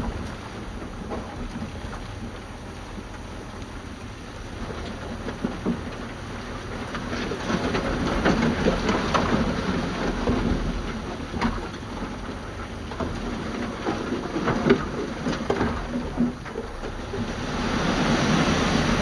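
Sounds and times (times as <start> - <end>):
soil and stones sliding: 0.0 - 19.0
rocks clattering: 4.6 - 18.7.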